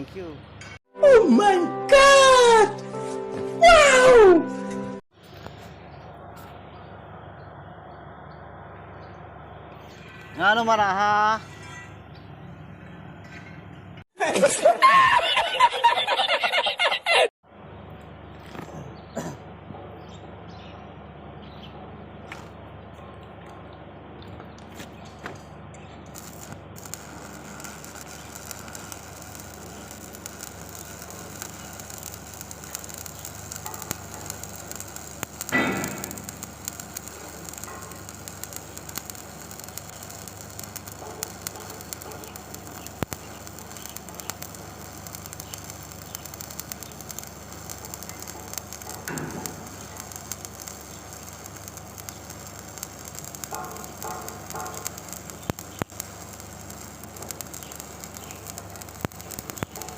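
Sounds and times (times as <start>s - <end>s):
welding arc crackling: 24.6s - 59.9s.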